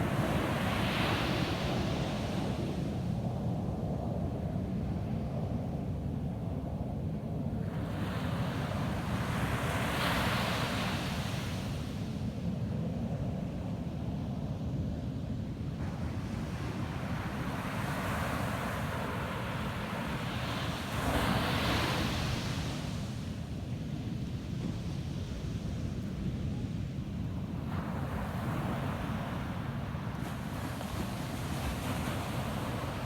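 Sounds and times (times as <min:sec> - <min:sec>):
ocean waves breaking on beach: 0:15.8 - 0:23.6, 0:27.4 - 0:33.0.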